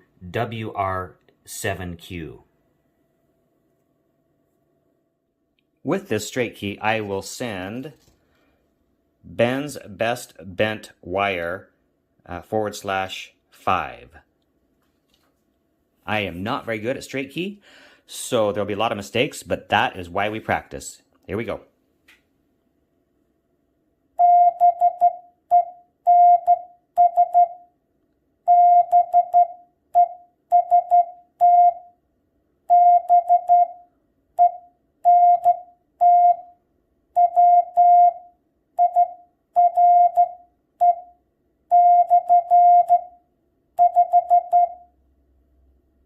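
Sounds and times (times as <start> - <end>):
morse code beeps: 24.2 - 27.6, 28.5 - 31.9, 32.7 - 33.8, 34.4 - 36.5, 37.2 - 43.1, 43.8 - 44.8.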